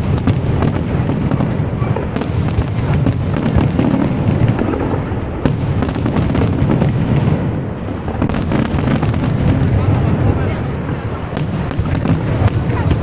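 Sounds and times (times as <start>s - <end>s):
fireworks bangs and crackles: 0.0s - 13.0s
low rumble of shells bursting: 2.1s - 10.5s.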